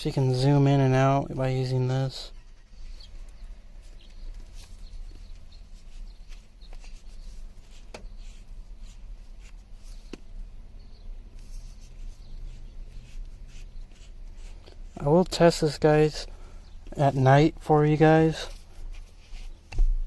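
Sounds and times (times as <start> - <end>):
handling rustles and ticks: 2.5 - 10.5.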